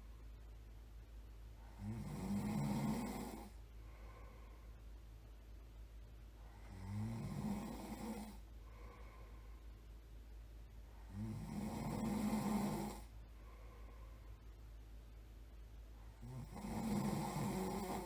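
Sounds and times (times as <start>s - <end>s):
person snoring: 1.7s - 3.6s, 6.6s - 8.4s, 11.1s - 13.1s, 16.2s - 18.0s.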